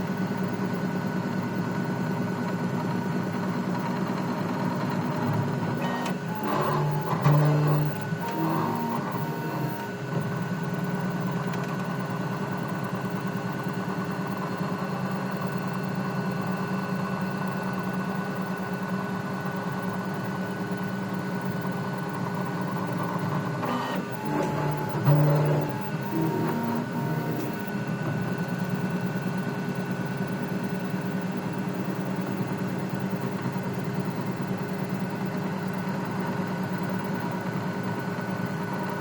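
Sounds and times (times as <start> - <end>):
printer motors stepped tones: 3.8 - 13.8, 20.7 - 30.7.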